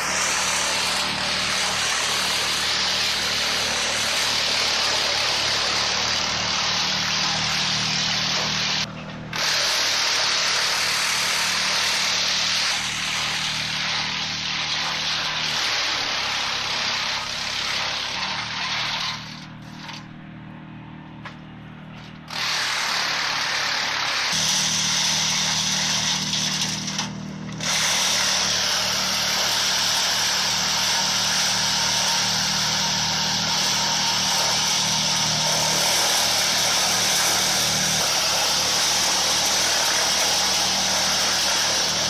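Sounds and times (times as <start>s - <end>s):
engine hum: 0.0s - 27.7s
wood chipper grinding wood: 0.0s - 42.0s.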